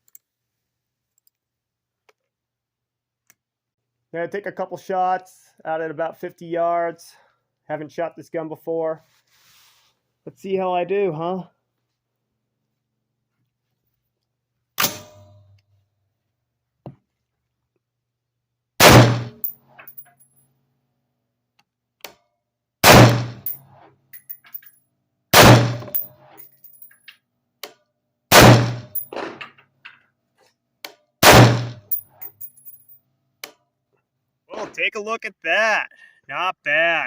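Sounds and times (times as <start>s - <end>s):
rifle shots: 18.8s - 19.4s, 22.8s - 23.4s, 25.4s - 26.0s, 28.3s - 29.0s, 31.2s - 31.9s
metallic clinks: 19.4s - 20.4s, 23.4s - 24.8s, 25.8s - 27.1s, 28.9s - 29.1s, 31.8s - 33.0s.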